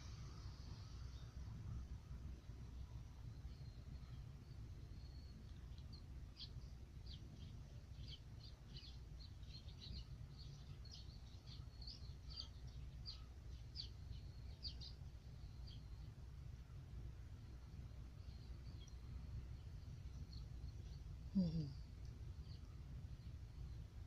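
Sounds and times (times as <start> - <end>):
low background rumble: 0.0 - 24.0
small birds chirping: 3.3 - 16.2, 17.9 - 23.9.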